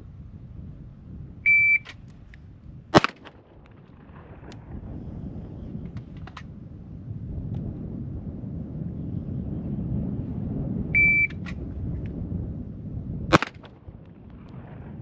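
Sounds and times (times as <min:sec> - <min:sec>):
shot timer beep: 0:01.5 - 0:01.9, 0:11.0 - 0:11.4
pistol shot: 0:02.9 - 0:04.7, 0:13.3 - 0:13.9.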